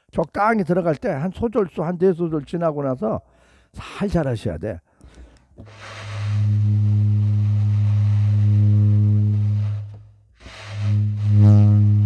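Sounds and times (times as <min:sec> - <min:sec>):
saxophone low long note: 0:05.7 - 0:12.0.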